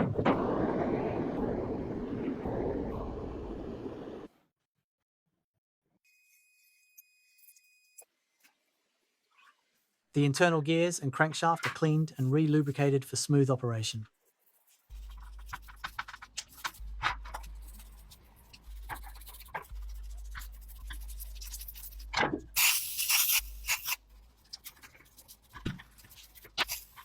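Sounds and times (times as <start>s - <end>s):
steady low hum: 0.0s - 4.3s, 14.9s - 22.6s, 23.4s - 26.6s
loud spray hiss: 22.6s - 24.0s.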